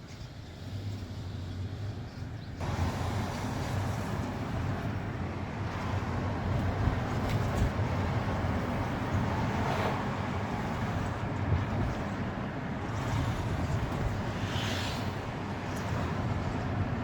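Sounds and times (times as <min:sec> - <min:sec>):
car engine and road noise: 0:00.0 - 0:17.0.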